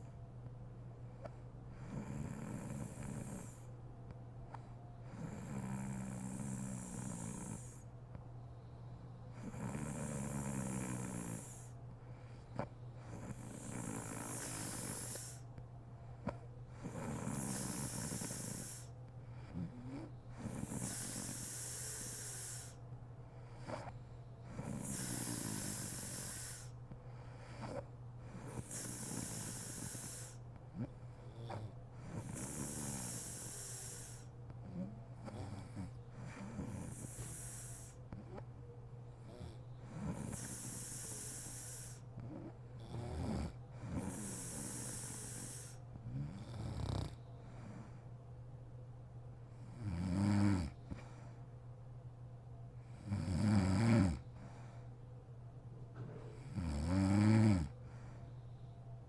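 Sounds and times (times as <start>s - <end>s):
steady low hum: 0.0s - 59.0s
woman snoring: 1.8s - 3.7s, 5.1s - 7.9s, 9.4s - 11.8s, 12.6s - 15.4s, 16.8s - 18.9s, 19.5s - 22.8s, 24.5s - 26.7s, 27.6s - 38.4s, 39.3s - 47.2s, 49.8s - 50.8s, 53.0s - 54.2s, 56.4s - 57.7s.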